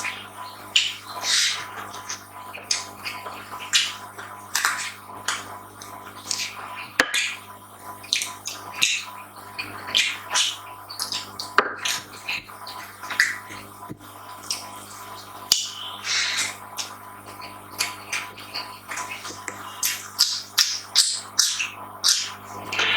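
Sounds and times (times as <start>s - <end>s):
chewing and mouth smacking: 14.3s - 22.9s.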